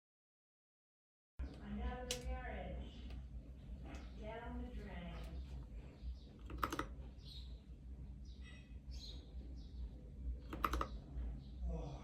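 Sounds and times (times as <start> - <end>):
mechanical keyboard typing: 6.4 - 7.0, 10.5 - 11.0.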